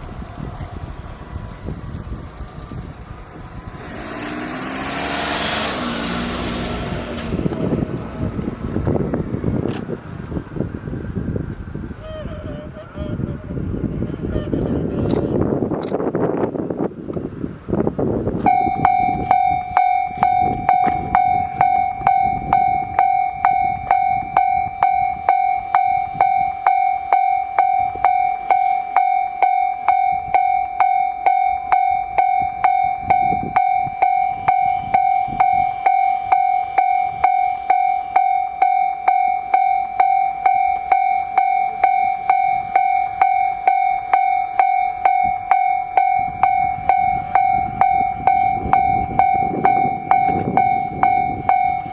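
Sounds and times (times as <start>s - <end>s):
level crossing warning bell: 18.4s - 51.9s.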